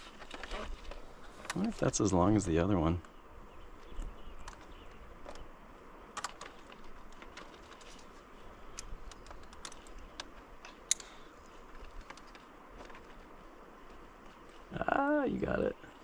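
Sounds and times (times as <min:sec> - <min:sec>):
climbing gear clicks and clinks: 0:06.2 - 0:13.3.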